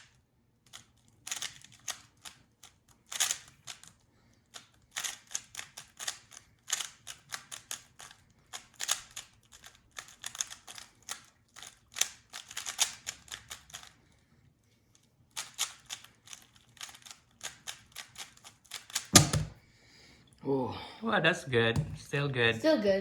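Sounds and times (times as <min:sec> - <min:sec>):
puzzle cube plastic clicks: 0:00.0 - 0:14.0, 0:15.3 - 0:19.6.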